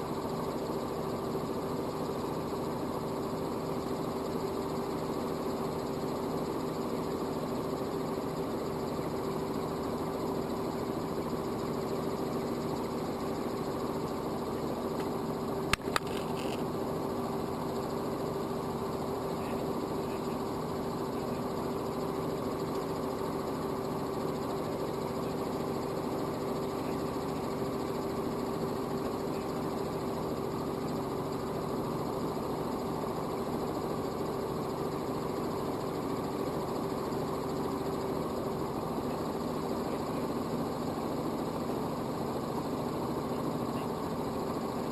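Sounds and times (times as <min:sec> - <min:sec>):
helicopter engine and rotors droning: 0:00.0 - 0:44.9
sharp click: 0:15.7 - 0:16.7.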